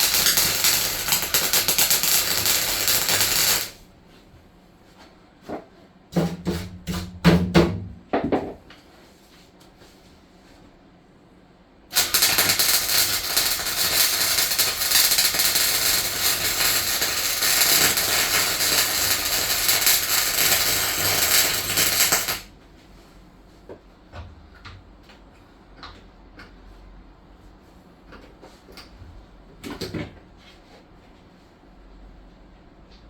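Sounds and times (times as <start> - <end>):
arc welding crackle: 0.0 - 3.8, 11.9 - 22.5.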